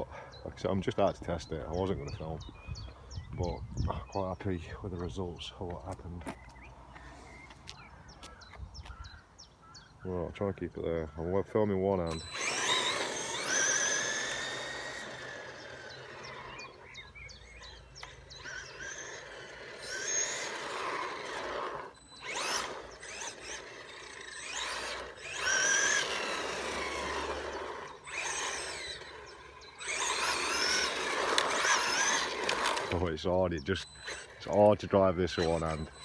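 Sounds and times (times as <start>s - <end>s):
electric motor whine: 11.9s - 36.0s.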